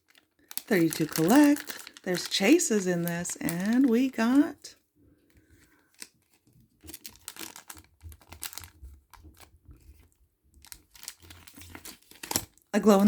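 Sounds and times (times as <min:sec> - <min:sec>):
wrapper crinkling: 0:00.0 - 0:04.7, 0:05.8 - 0:13.0.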